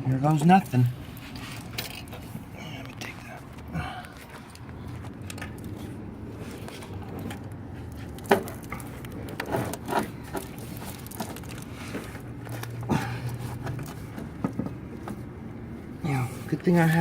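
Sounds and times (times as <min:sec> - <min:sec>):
low steady hum: 0:00.0 - 0:17.0
cable knocking and scraping: 0:04.3 - 0:15.2.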